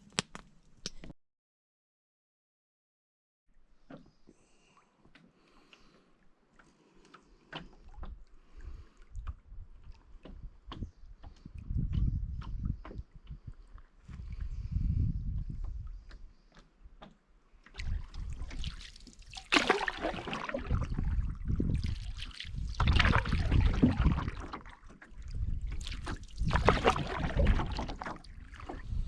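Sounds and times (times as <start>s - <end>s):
paddle swishing and splashing: 15.7s - 29.0s.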